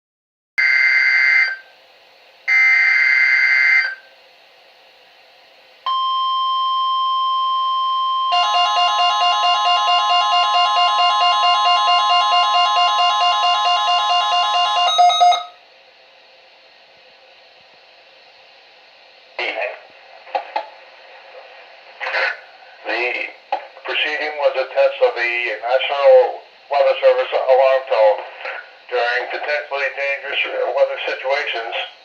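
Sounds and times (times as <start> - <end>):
pulsing receiver alarm: 0.6 - 1.7, 2.5 - 4.1, 5.9 - 15.6
steady weather alarm tone: 0.6 - 1.7, 2.5 - 4.1, 5.9 - 15.6.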